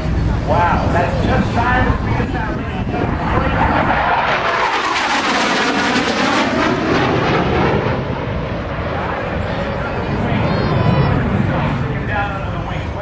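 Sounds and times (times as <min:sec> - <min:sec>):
jet aircraft flying past: 0:00.0 - 0:13.0.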